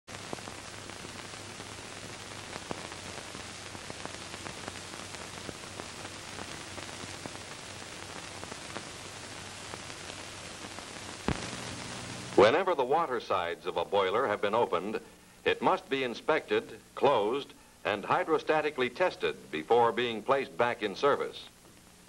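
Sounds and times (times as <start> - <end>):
recording hiss with crackles: 0.0 - 22.0
faint low hum: 0.1 - 22.0
sharp pop: 11.2 - 11.6.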